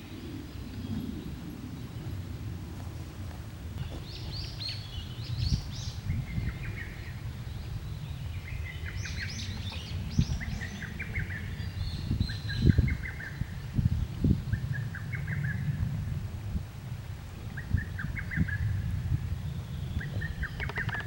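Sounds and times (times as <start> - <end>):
steady low rumble: 0.0 - 21.0
small birds chirping: 3.7 - 15.7, 17.5 - 21.0.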